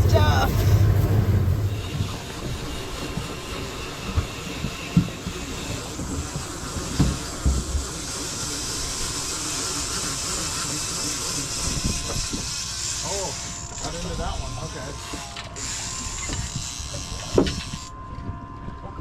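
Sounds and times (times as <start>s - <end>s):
steady hissing rush: 0.0s - 2.3s.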